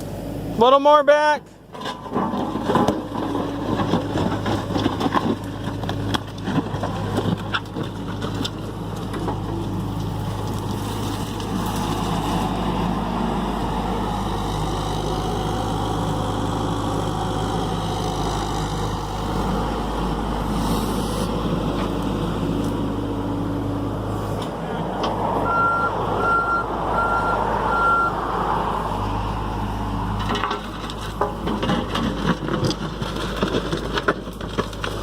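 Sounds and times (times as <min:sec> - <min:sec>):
diesel engine running: 0:00.0 - 0:00.8, 0:01.5 - 0:35.0
knocks and clanks: 0:30.2 - 0:35.0.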